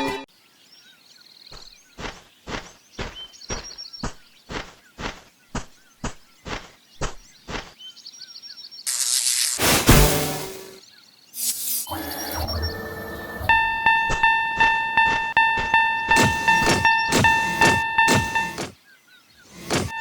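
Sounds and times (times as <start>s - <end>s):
sudden loud hiss: 8.9s - 10.8s.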